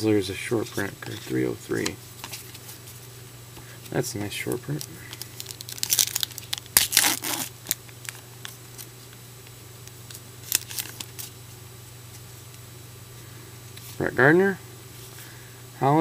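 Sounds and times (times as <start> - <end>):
foil wrapper tearing and crinkling: 4.4 - 8.9, 10.1 - 11.4.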